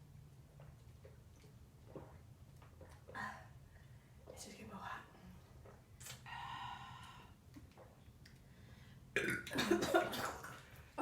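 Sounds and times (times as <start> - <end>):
person burping loudly: 9.2 - 9.7.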